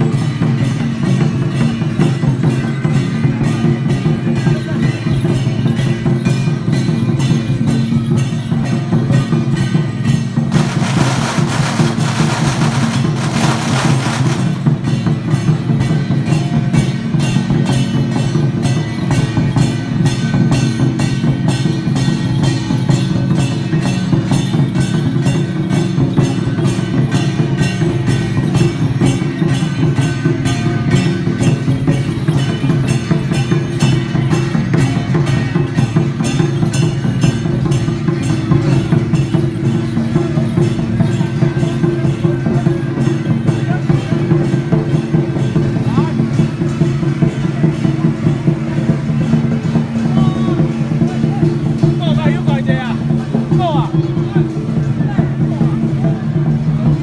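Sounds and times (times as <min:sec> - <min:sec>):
crashing cymbals: 0:00.0 - 0:57.0
procession drums and clappers: 0:10.5 - 0:15.8.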